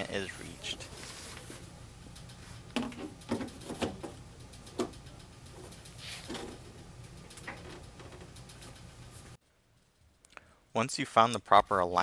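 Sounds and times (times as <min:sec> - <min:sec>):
steady low hum: 0:00.0 - 0:10.7.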